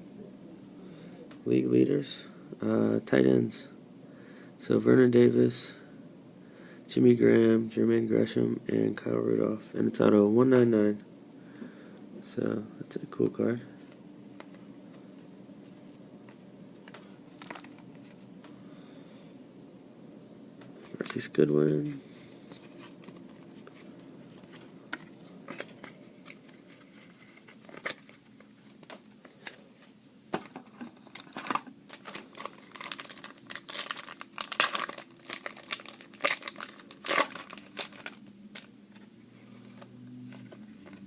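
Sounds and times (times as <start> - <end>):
wrapper crinkling and ripping: 24.5 - 29.6, 30.8 - 39.0.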